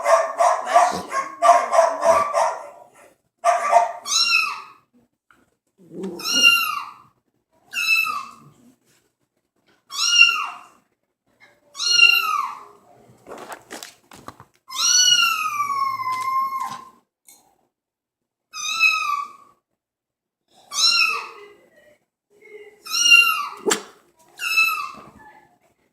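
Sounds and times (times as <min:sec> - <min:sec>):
recorded cat meows: 0:04.0 - 0:04.8, 0:05.9 - 0:07.0, 0:09.9 - 0:10.8, 0:11.7 - 0:12.8, 0:14.7 - 0:17.0, 0:18.5 - 0:19.6, 0:22.9 - 0:23.7.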